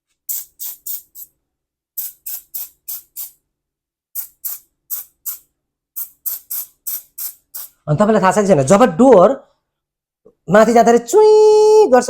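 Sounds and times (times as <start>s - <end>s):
aerosol spray squirts: 0.2s - 1.4s, 2.0s - 3.4s, 4.2s - 7.8s.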